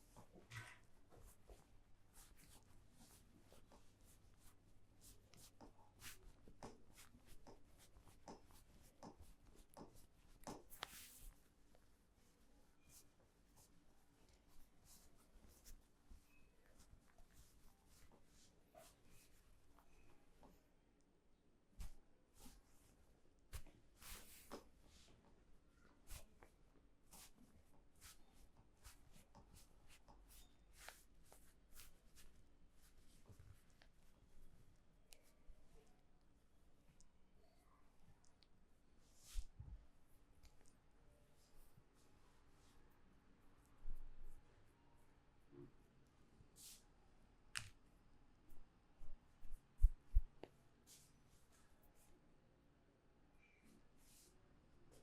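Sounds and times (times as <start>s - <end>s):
hands rubbing hair and scalp: 0.2s - 11.5s, 21.8s - 25.1s, 26.0s - 34.1s, 39.2s - 39.6s
hands rubbing dry hair: 2.2s - 11.4s.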